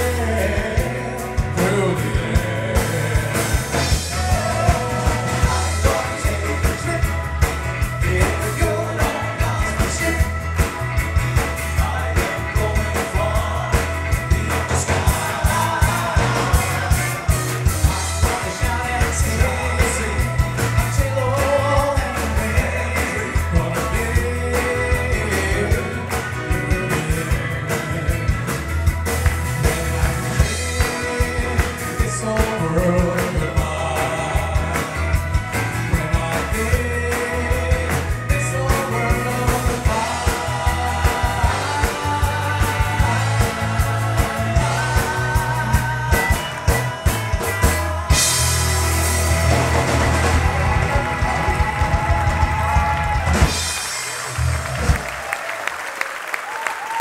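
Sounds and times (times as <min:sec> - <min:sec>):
person singing: 0:00.0 - 0:10.8, 0:11.4 - 0:28.9, 0:29.6 - 0:54.0
steady drum beat: 0:00.0 - 0:55.3
band playing a song: 0:00.0 - 0:57.0
bass: 0:00.0 - 0:57.0.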